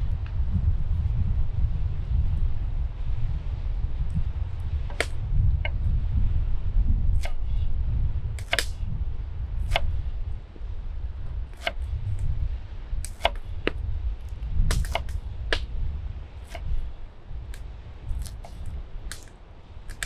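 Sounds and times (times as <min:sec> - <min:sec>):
low rumble: 0:00.0 - 0:19.1
fire crackling and popping: 0:08.4 - 0:08.8, 0:14.7 - 0:15.8, 0:17.5 - 0:20.0.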